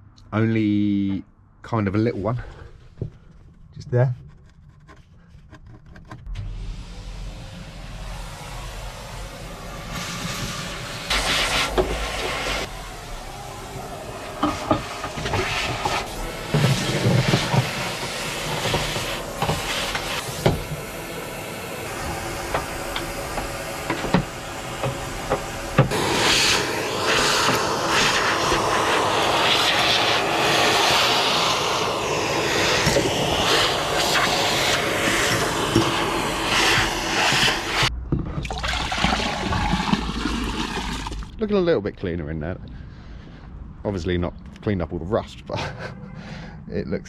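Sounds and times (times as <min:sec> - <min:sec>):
vacuum cleaner running: 0:06.4 - 0:37.9, 0:38.6 - 0:41.3.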